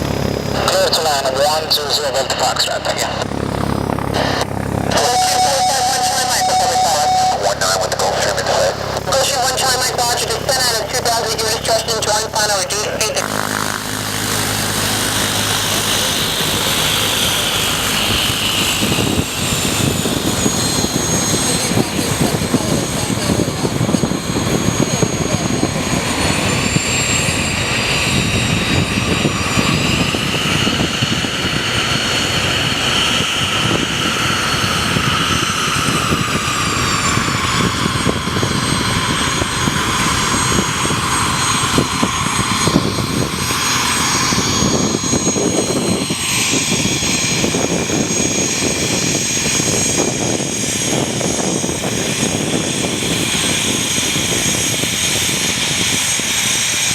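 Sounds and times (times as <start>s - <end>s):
propeller plane engine running: 0.0s - 56.9s
faint high whine: 0.4s - 30.0s.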